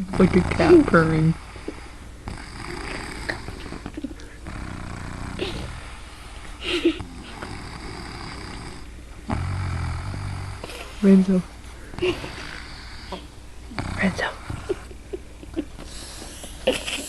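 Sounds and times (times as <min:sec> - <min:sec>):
person snoring: 0:02.3 - 0:06.0, 0:06.6 - 0:11.2.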